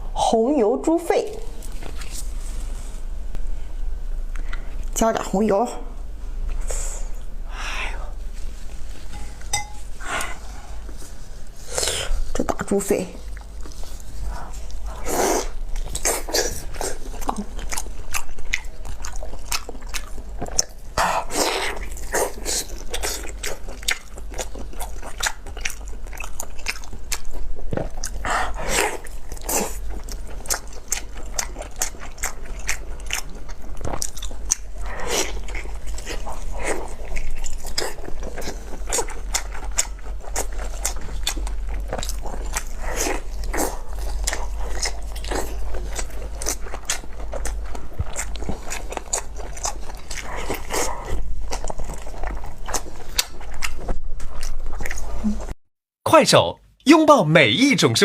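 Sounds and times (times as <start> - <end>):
person chewing and slurping: 13.2 - 55.6.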